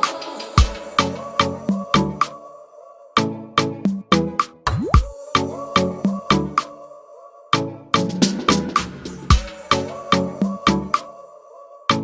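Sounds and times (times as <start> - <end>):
music with punchy beat: 0.0 - 2.4, 3.8 - 6.7, 8.0 - 11.1.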